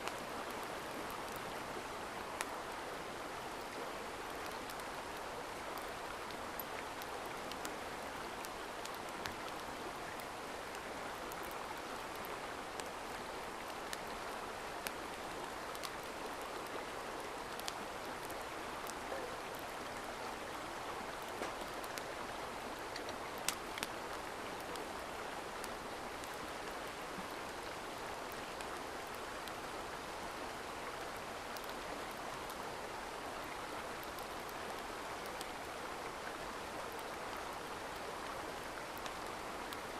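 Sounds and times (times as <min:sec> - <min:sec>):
mountain stream flowing: 0:00.0 - 0:39.9
faint sharp clicks: 0:05.8 - 0:07.8, 0:15.7 - 0:16.0, 0:22.8 - 0:24.9.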